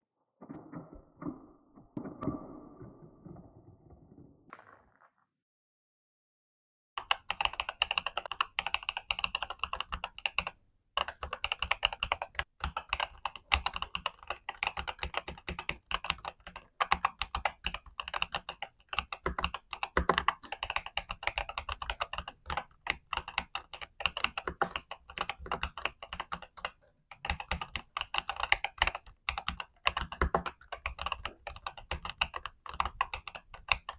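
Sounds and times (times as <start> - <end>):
mechanical keyboard typing: 7.0 - 33.9.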